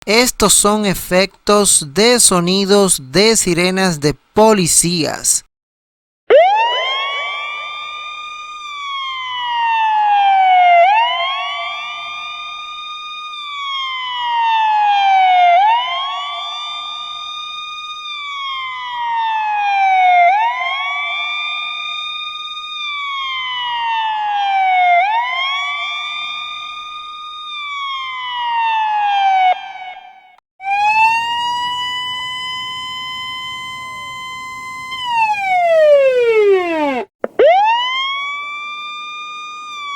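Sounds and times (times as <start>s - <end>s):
siren holding high note: 30.6s - 37.8s
police siren wailing: 30.6s - 39.0s.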